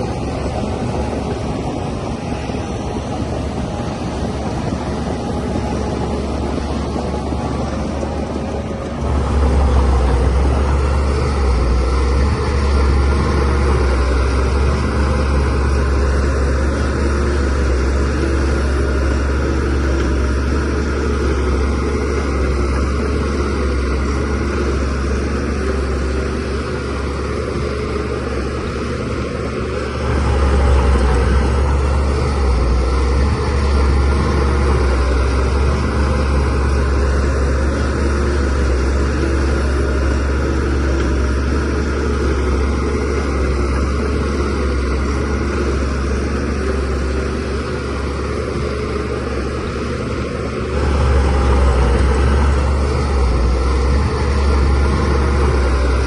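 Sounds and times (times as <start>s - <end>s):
bulldozer diesel engine rumbling: 0.0s - 56.0s.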